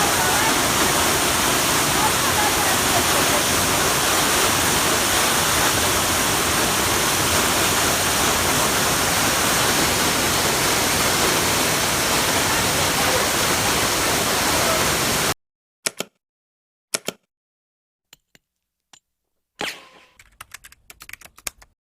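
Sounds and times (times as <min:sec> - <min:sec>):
waterfall rushing: 0:00.0 - 0:15.3.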